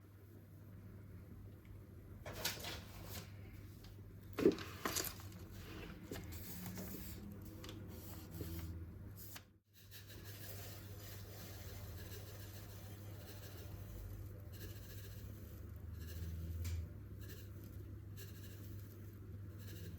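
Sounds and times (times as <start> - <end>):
low steady hum: 0.0 - 19.9
handling noises: 2.2 - 8.6.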